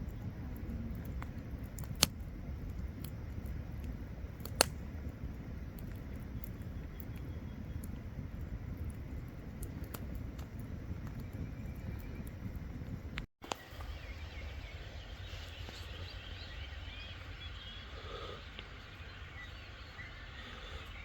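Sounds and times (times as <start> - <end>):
faint clicks: 0.0 - 4.8, 5.4 - 13.9
birds chirping: 0.0 - 21.0
low steady rumbling: 0.0 - 21.0.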